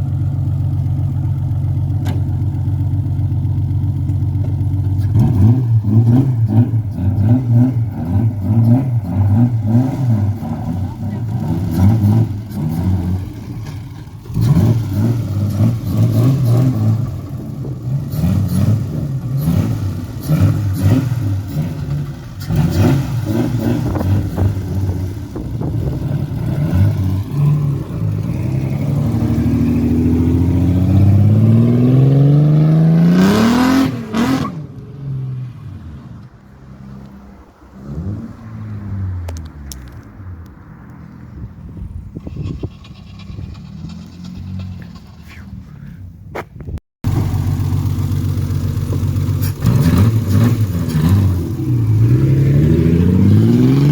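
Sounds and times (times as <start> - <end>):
car engine revving hard: 5.0 - 13.6, 14.3 - 34.7, 47.0 - 53.9.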